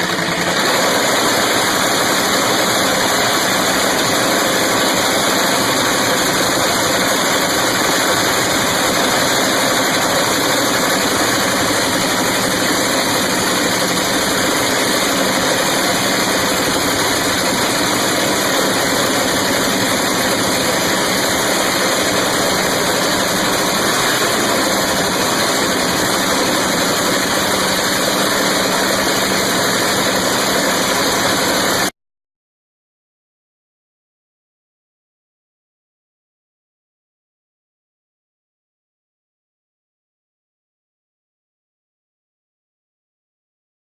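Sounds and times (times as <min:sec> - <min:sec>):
race car engine idling: 0:04.7 - 0:31.9.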